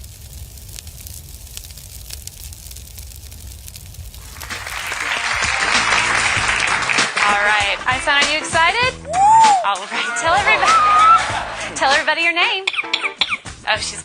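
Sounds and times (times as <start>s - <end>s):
faint crackling hiss: 0.0s - 8.8s
audience applause: 4.2s - 9.5s, 10.3s - 12.0s.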